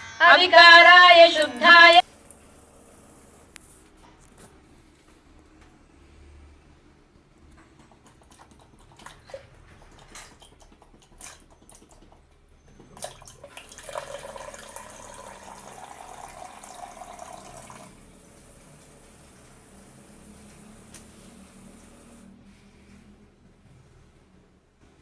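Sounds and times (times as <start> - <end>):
water pouring into container: 13.0 - 18.1.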